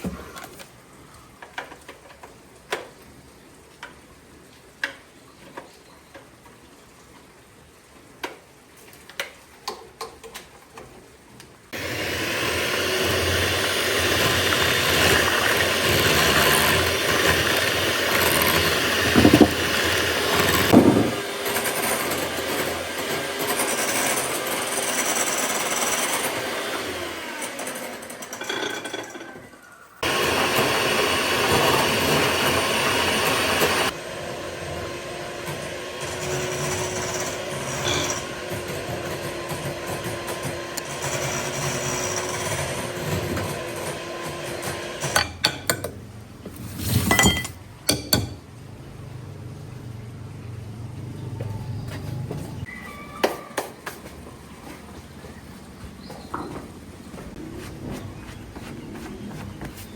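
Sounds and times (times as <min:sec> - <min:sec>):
motor-driven tool running: 0:11.8 - 0:22.0.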